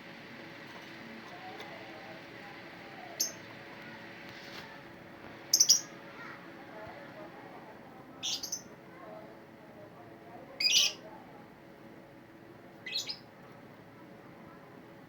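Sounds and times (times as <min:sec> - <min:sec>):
lovebirds shrill chirps: 0:05.5 - 0:05.9.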